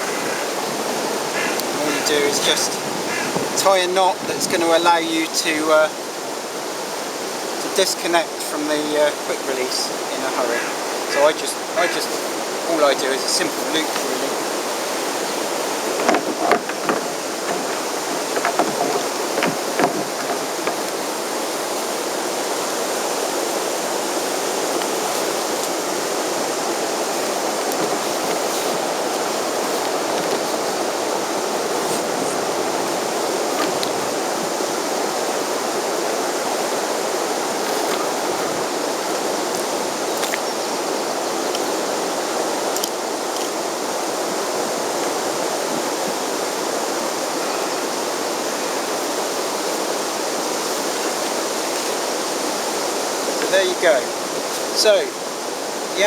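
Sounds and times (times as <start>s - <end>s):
river water rushing: 0.0s - 56.0s
rope and fittings clicking: 15.2s - 21.2s, 27.2s - 31.0s.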